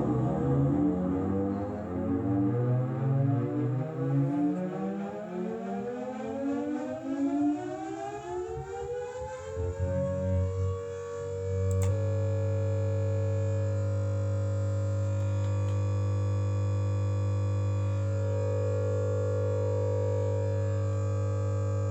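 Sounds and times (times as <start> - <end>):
steady buzzing drone: 0.0 - 5.4
air raid siren recording: 0.0 - 12.1.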